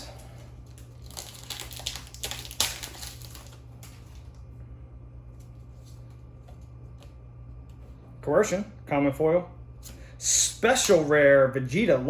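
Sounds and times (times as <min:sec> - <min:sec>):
foil wrapper crinkling and tearing: 0:00.0 - 0:04.4
steady low hum: 0:00.0 - 0:12.0.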